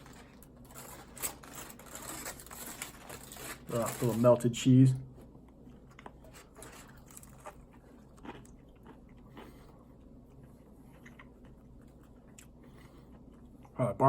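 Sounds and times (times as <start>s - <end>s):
person chewing crunchy food: 5.5s - 13.8s.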